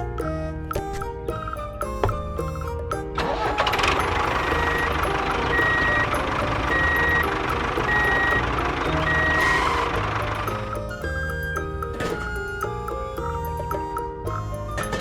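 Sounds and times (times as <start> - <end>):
reversing alarm beeping: 1.7 - 13.9
vehicle engine running: 3.1 - 10.9.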